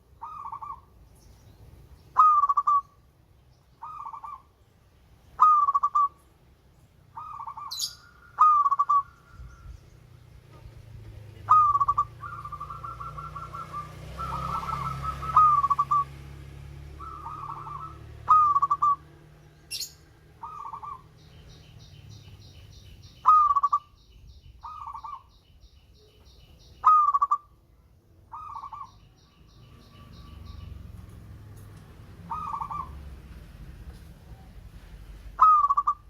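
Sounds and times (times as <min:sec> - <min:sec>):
dove cooing: 0:00.2 - 0:00.8, 0:02.2 - 0:02.9, 0:05.4 - 0:06.2, 0:07.2 - 0:09.2, 0:11.4 - 0:16.2, 0:16.9 - 0:19.1, 0:19.7 - 0:21.1, 0:23.2 - 0:23.9, 0:26.8 - 0:27.5, 0:28.3 - 0:29.0, 0:32.2 - 0:33.2, 0:35.3 - 0:36.0.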